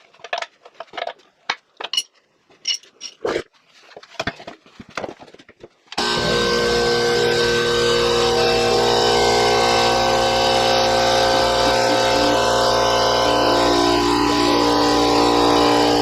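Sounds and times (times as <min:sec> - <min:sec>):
air compressor running: 0:06.0 - 0:16.0.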